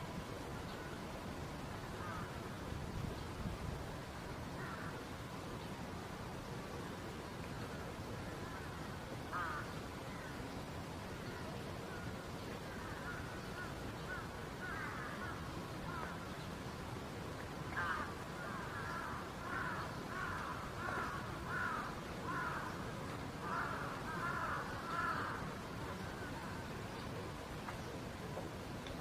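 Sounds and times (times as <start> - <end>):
bird calling harsh caws: 4.6 - 4.9, 8.5 - 10.3, 12.8 - 16.1, 17.8 - 22.8, 23.4 - 25.5.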